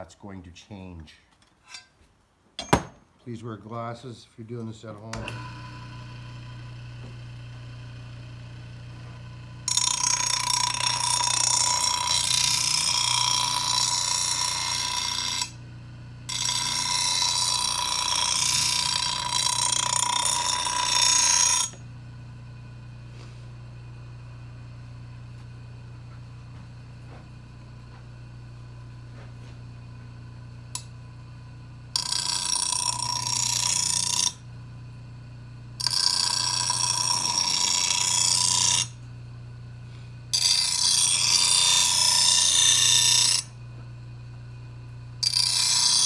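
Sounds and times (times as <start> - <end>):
angle grinder grinding steel: 5.0 - 15.6, 16.2 - 21.9, 32.0 - 34.5, 35.8 - 39.1, 39.9 - 43.6, 45.2 - 46.0.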